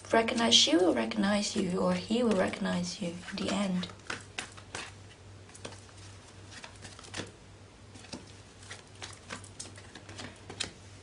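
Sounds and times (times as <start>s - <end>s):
steady low hum: 0.0s - 11.0s
cards clicking and tapping: 3.3s - 5.9s, 6.5s - 10.8s.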